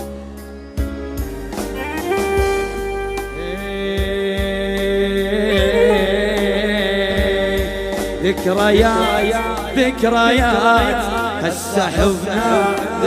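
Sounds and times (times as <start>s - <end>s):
long held melodic notes: 0.0s - 7.8s
low drum beat: 2.4s - 13.0s.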